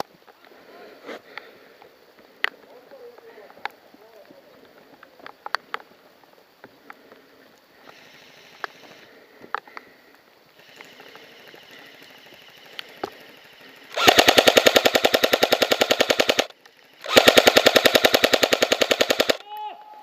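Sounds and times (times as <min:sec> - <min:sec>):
airsoft rifle full-auto bursts: 0:10.6 - 0:19.4.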